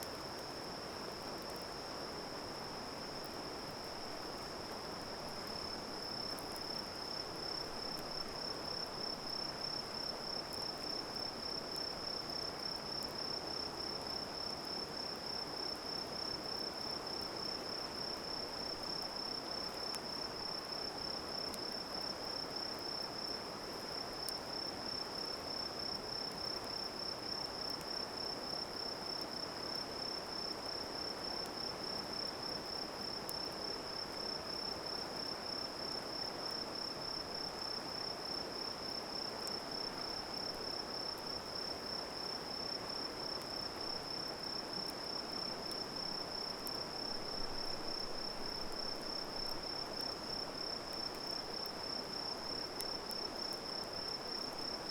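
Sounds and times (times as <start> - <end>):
campfire crackles: 0.1 - 25.3, 39.2 - 54.9
crickets trilling: 24.2 - 54.9.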